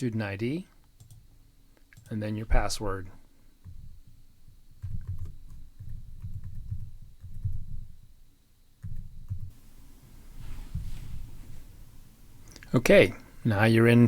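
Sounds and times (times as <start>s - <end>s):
computer keyboard typing: 1.0s - 1.2s, 3.6s - 7.9s, 8.8s - 9.5s.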